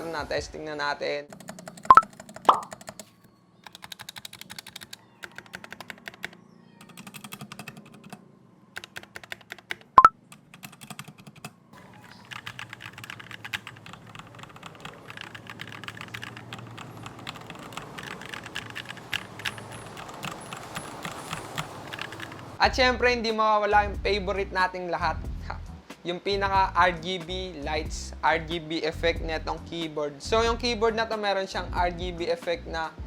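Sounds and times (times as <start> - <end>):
typing on mechanical keyboard: 1.3 - 8.2, 8.8 - 22.6.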